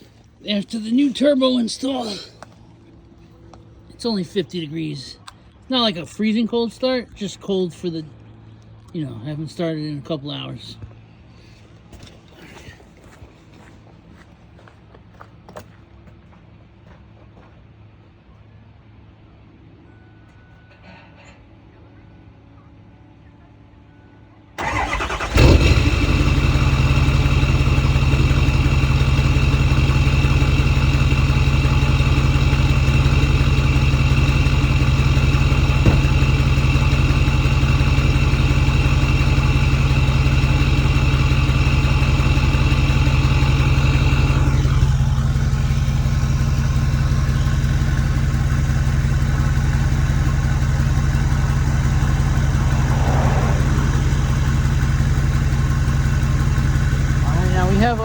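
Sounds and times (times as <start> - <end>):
diesel engine starting and idling: 0.0 - 7.8, 24.6 - 58.0.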